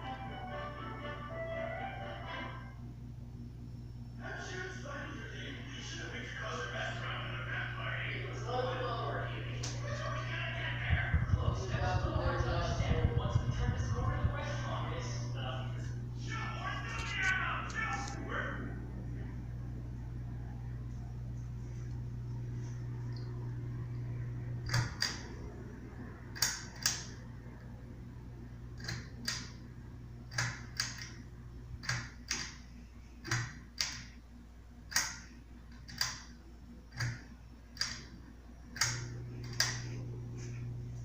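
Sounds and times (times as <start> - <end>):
fan motor low hum: 0.0 - 41.0
pull-chain switch clicking: 28.8 - 29.6, 30.3 - 31.2, 34.9 - 36.2, 38.8 - 39.8.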